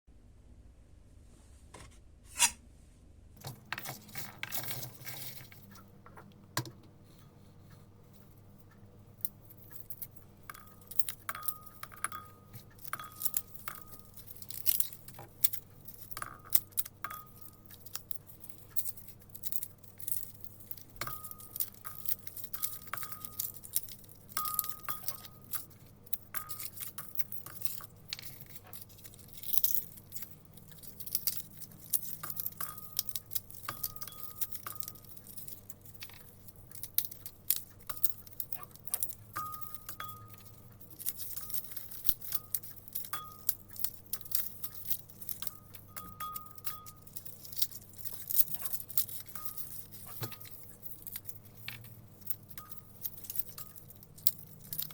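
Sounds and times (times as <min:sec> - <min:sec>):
squeaky cloves rubbing: 0:02.3 - 0:02.6.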